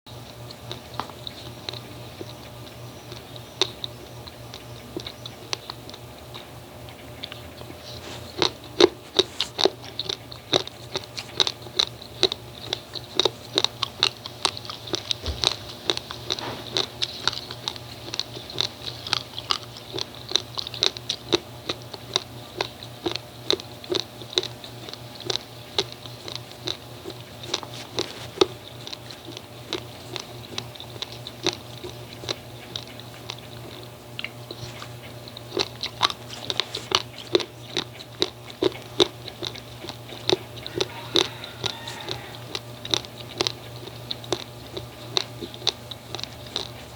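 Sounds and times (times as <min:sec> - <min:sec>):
crunching raw rice grains: 0:00.2 - 0:46.9.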